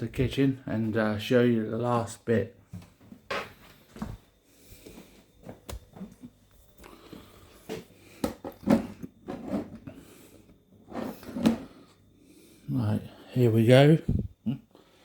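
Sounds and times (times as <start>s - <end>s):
knocks and thumps: 8.2s - 9.8s.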